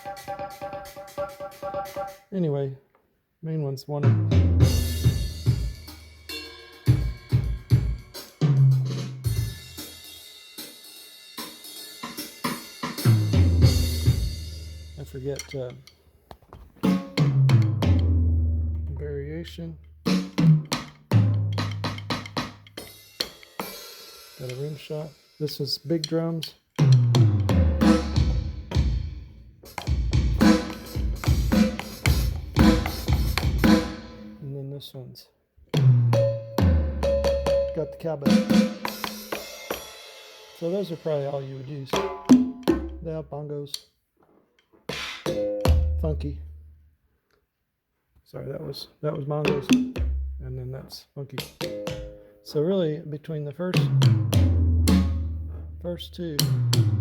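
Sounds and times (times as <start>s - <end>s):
electronic drum beat: 0.0s - 2.2s, 4.2s - 10.2s, 11.5s - 15.4s, 16.8s - 19.0s, 20.1s - 26.2s, 26.8s - 34.4s, 35.8s - 43.2s, 45.2s - 46.5s, 49.5s - 50.6s, 51.4s - 52.2s, 53.7s - 57.0s
electronic drum hits: 29.8s - 34.4s, 45.3s - 46.2s, 53.8s - 55.6s.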